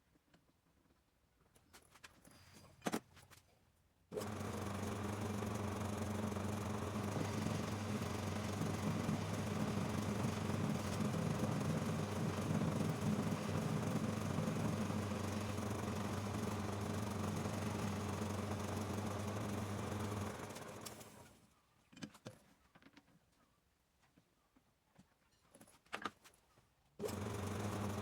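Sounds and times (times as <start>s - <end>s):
lathe motor humming: 4.2s - 21.2s, 27.0s - 28.0s.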